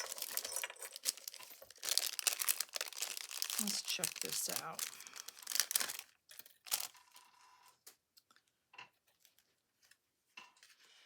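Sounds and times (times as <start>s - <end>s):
paper rustling and crinkling: 0.0s - 7.3s.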